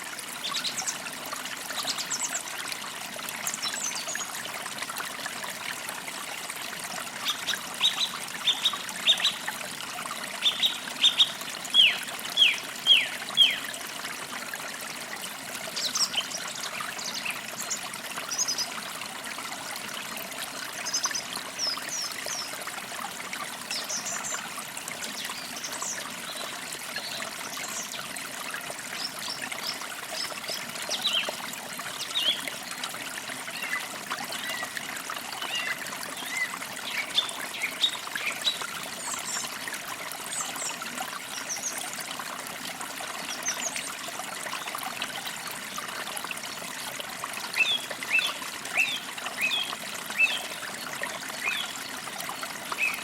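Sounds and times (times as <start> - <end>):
creek trickling and splashing: 0.0 - 53.0.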